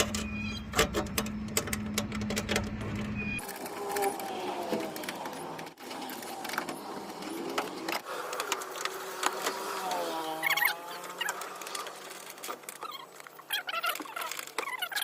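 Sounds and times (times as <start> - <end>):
small power tool motor: 3.4 - 12.4.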